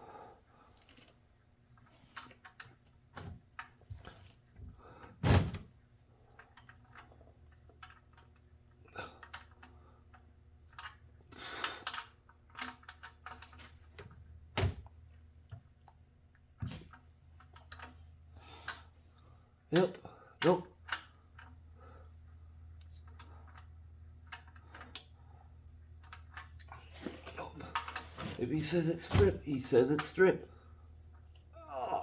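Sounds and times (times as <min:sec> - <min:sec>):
hand tools clicking and clunking: 0:26.0 - 0:30.3.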